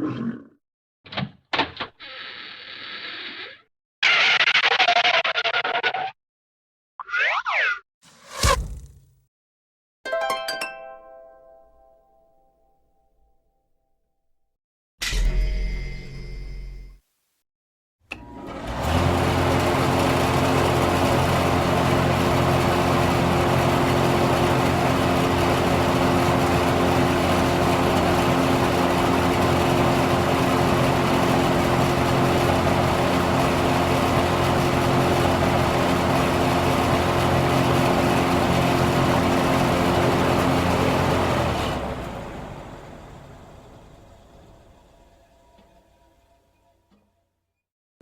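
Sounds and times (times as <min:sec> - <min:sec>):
motor engine running: 0:18.4 - 0:45.5.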